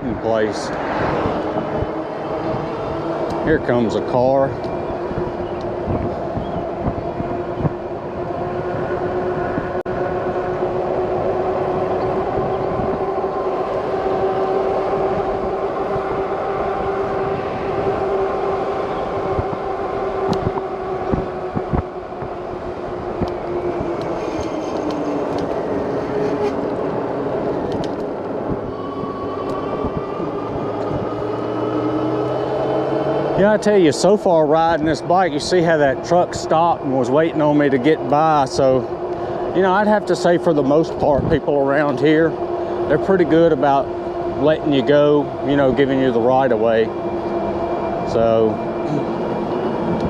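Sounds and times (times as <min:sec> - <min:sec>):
wind rumble on microphone: 0:00.0 - 0:50.0
electric bike motor whining: 0:00.7 - 0:36.6.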